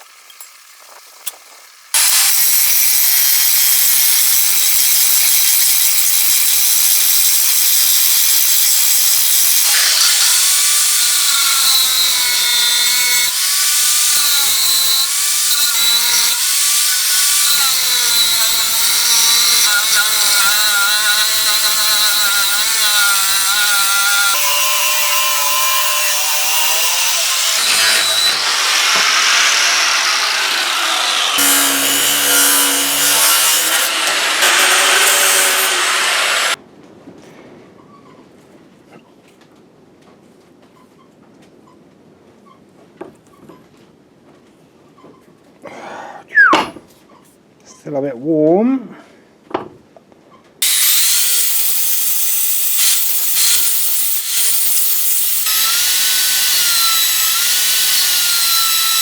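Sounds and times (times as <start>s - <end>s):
power grinder grinding metal: 2.0s - 36.6s, 50.6s - 59.0s.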